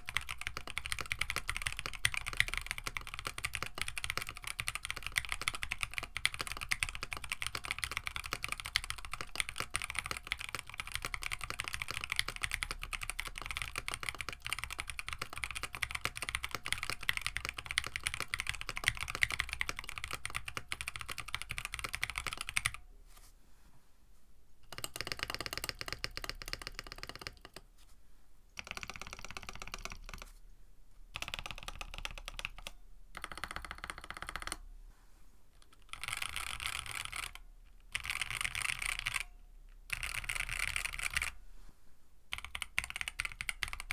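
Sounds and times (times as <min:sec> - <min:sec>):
mechanical keyboard typing: 0:00.0 - 0:22.8, 0:24.6 - 0:27.6, 0:28.6 - 0:30.3, 0:31.2 - 0:34.6, 0:35.7 - 0:39.3, 0:39.9 - 0:41.4, 0:42.3 - 0:43.9.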